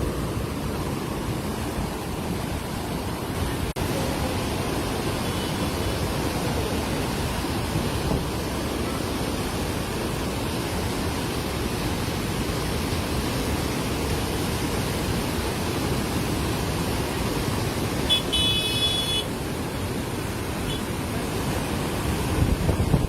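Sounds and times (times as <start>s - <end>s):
flooded river roaring: 0.0s - 23.0s
high-pitched horn toot: 18.1s - 19.3s.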